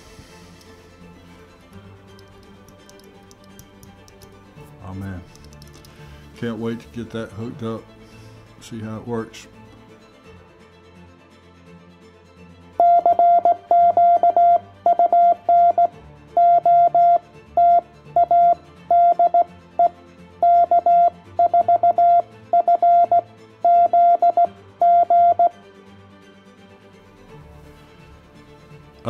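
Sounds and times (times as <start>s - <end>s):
morse code beeps: 12.8s - 25.6s.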